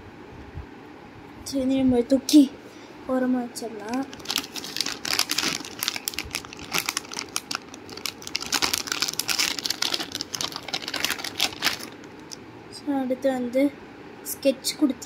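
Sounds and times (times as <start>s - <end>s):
packaging crinkling: 3.8s - 12.4s.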